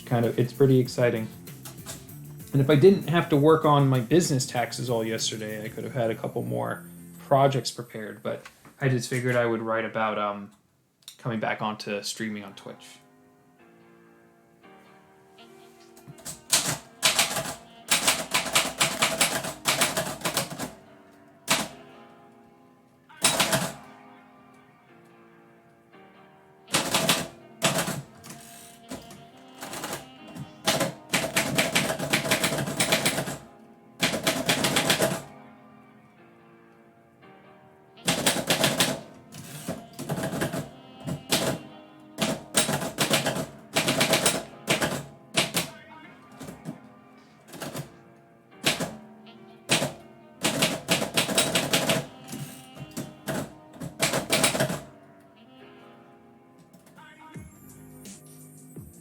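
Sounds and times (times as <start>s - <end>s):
quiet background music: 0.0s - 59.0s
typewriter keys clicking: 16.1s - 20.8s, 21.5s - 21.8s, 23.2s - 23.8s, 26.7s - 33.4s, 34.0s - 35.2s, 38.1s - 41.6s, 42.2s - 45.7s, 47.5s - 47.9s, 48.6s - 49.0s, 49.7s - 54.9s.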